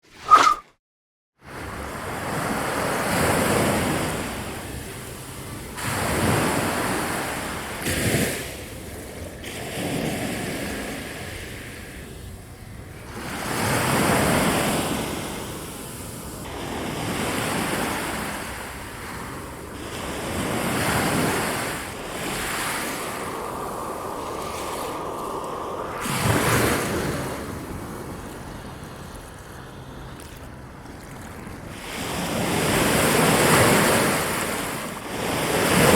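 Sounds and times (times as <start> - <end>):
wind rushing in gusts: 20.5 - 29.6.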